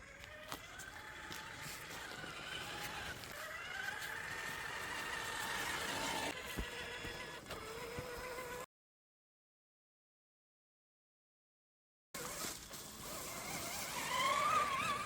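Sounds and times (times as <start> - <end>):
clicks and knocks on rough ground: 0.0 - 8.5
rc truck electric motor whining: 0.0 - 8.7, 12.2 - 15.0.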